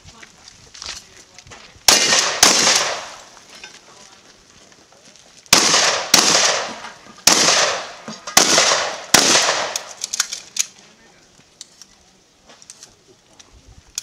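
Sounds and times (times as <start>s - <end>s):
shotgun blasts: 1.9s - 3.3s, 5.5s - 10.0s.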